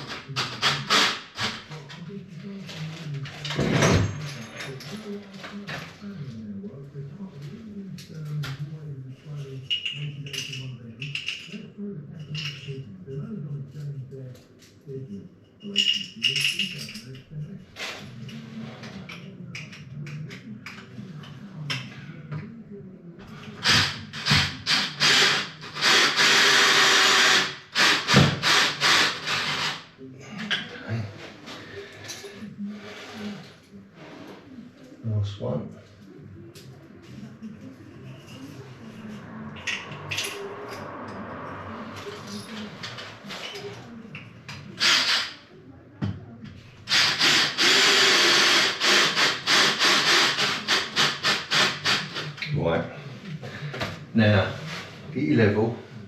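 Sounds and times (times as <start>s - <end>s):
cordless drill running: 25.0s - 29.8s, 46.9s - 52.0s.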